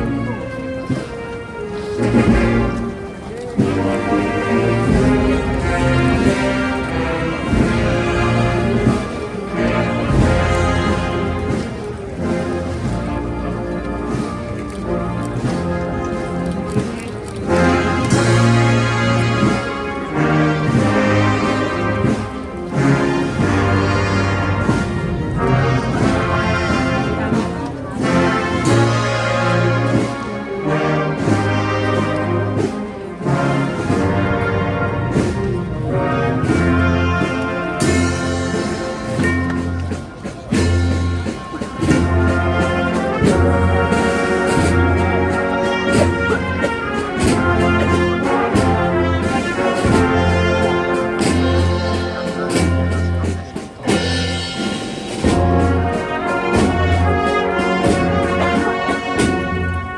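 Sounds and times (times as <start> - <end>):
brass band playing slow march: 0.0 - 59.9
drum strikes: 37.8 - 59.9.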